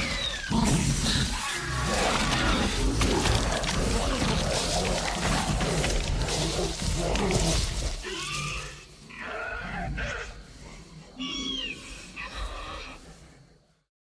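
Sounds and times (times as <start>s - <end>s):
creature rasping growl: 0.0s - 10.5s
creature shrieking calls: 11.2s - 13.0s.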